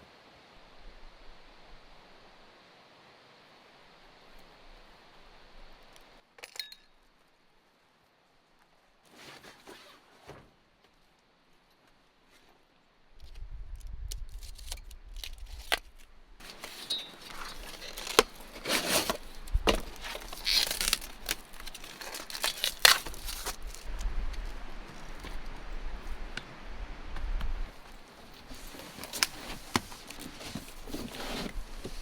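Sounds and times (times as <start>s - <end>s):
rustling and crinkling: 8.6s - 32.0s.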